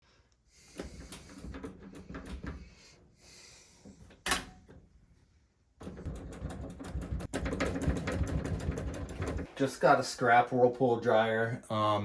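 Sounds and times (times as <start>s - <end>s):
hard objects clicking and knocking: 5.8s - 9.5s.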